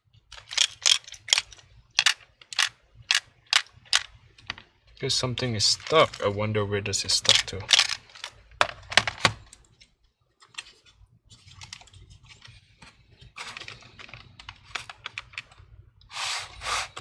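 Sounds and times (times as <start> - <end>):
plastic laptop casing clicks and rattles: 0.3 - 4.7, 7.2 - 15.7.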